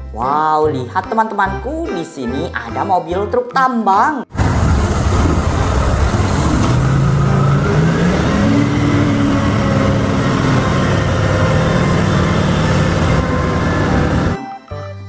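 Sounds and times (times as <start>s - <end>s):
truck engine revving: 4.3s - 14.4s.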